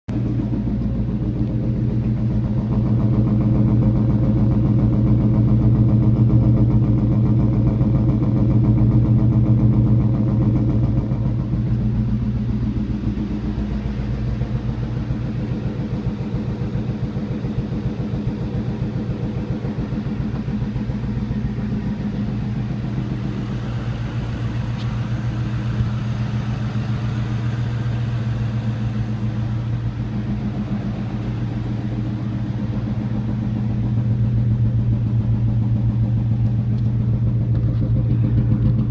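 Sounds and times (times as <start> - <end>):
car engine idling with pulsing: 0.0 - 38.9.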